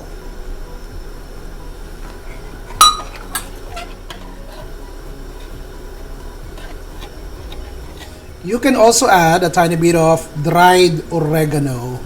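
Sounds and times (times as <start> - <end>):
metal utensil clinking on bowl: 2.0 - 10.6.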